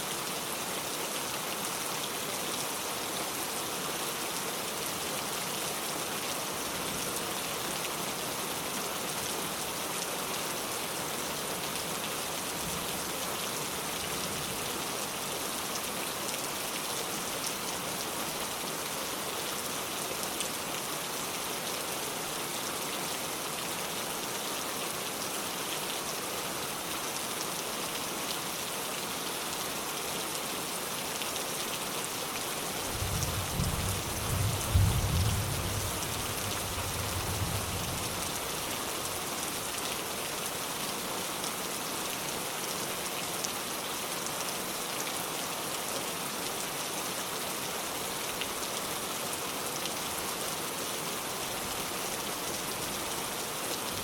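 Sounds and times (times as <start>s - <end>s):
rain pattering: 32.6s - 40.8s.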